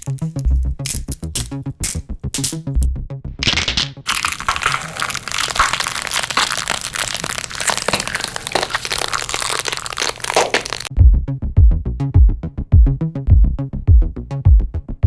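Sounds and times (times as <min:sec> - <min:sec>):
crunching and crackling: 0:03.4 - 0:10.9.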